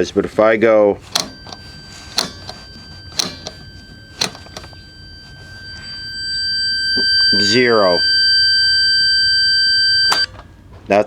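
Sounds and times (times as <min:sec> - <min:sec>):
pushbutton switch clicks: 0:01.1 - 0:05.6
multimeter continuity beep: 0:01.1 - 0:10.3.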